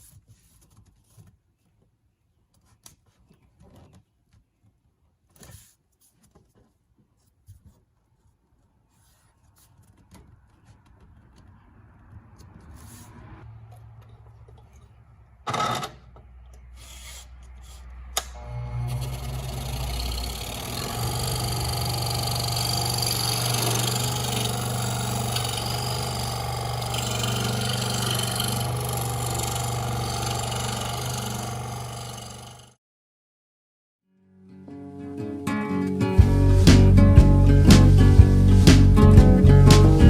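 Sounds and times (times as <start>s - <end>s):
scroll saw cutting wood: 16.7s - 32.8s.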